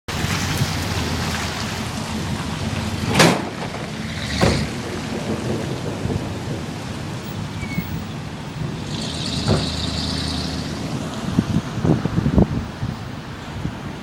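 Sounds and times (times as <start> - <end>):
wind blowing across microphone: 0.1 - 14.0
wind gusts buffeting microphone: 0.1 - 14.0.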